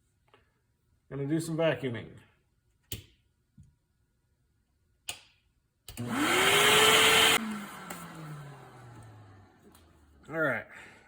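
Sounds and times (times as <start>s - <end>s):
vacuum cleaner motor whining: 6.0s - 10.0s.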